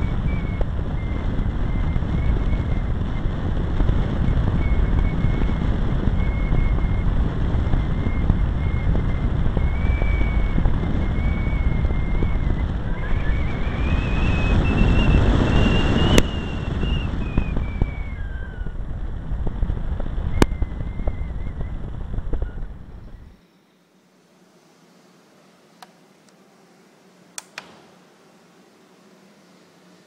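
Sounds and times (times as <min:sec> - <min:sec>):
wind rush on microphone: 0:00.0 - 0:23.4
electric motor and propeller whine: 0:00.0 - 0:25.2
sharp clicks: 0:27.4 - 0:27.8.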